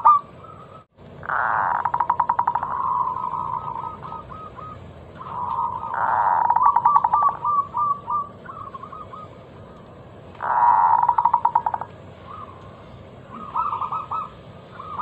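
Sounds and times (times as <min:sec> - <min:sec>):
dove cooing song: 0:00.0 - 0:15.0.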